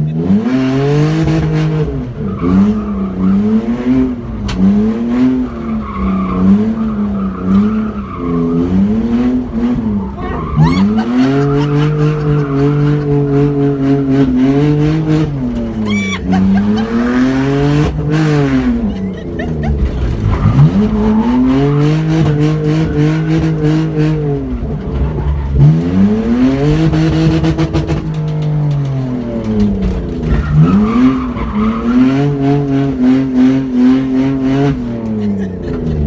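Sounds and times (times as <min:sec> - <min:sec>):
car engine at high revs: 0:00.0 - 0:36.0
tyres squealing: 0:09.8 - 0:23.5.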